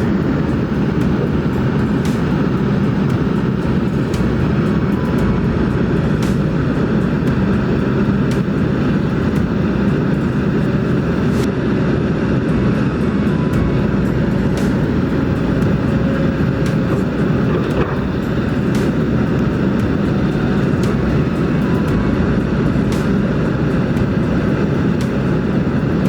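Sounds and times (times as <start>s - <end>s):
excavator diesel engine running: 0.0s - 26.0s.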